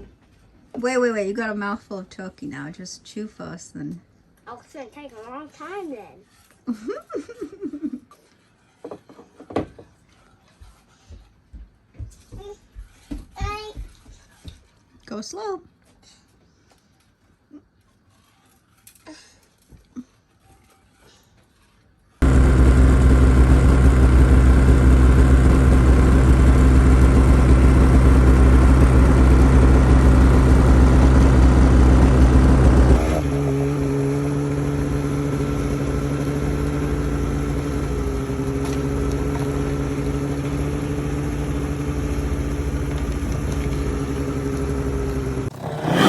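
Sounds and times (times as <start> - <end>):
loud engine running: 22.2 - 46.0
quieter engine running: 22.2 - 46.0.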